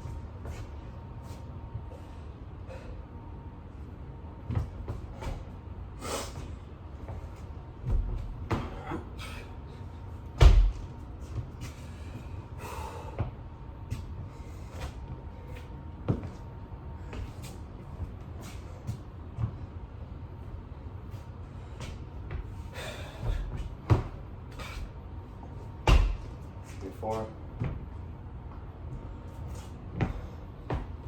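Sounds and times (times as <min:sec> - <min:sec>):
dull thumps of hands and feet landing: 0:04.4 - 0:05.5, 0:06.4 - 0:08.9, 0:10.3 - 0:11.8, 0:16.0 - 0:16.4, 0:21.8 - 0:24.9, 0:25.7 - 0:26.8, 0:29.8 - 0:31.0.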